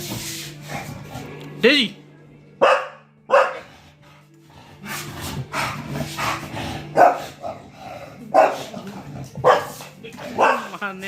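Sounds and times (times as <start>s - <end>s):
dog barking: 2.6s - 3.7s, 6.9s - 7.4s, 8.3s - 8.8s, 9.4s - 10.8s.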